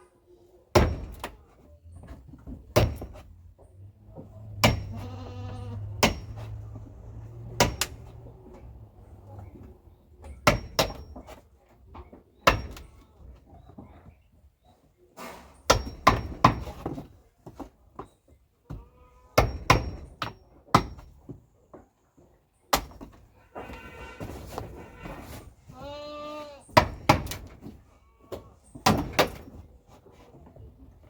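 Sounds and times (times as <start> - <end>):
hammer striking chisel into wood: 0.7 - 1.3, 2.8 - 3.2, 4.6 - 5.0, 6.0 - 6.5, 7.6 - 8.1, 10.4 - 11.2, 12.4 - 12.9, 15.7 - 16.8, 19.4 - 21.1, 26.8 - 27.4
goats bleating: 4.9 - 6.0, 25.7 - 26.7.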